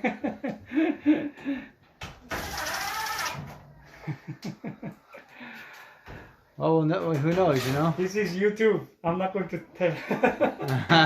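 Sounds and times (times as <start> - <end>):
small electric motor whirring: 2.3 - 3.4.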